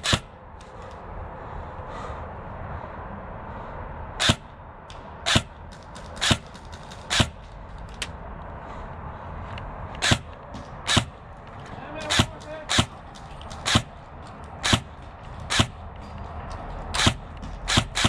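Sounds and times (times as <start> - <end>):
airsoft gun shots: 0.0 - 0.4, 4.2 - 4.6, 5.2 - 7.5, 10.0 - 11.2, 11.9 - 14.0, 14.6 - 15.8, 17.0 - 18.0
distant airsoft shots: 0.0 - 0.8, 4.2 - 7.7, 10.0 - 18.0.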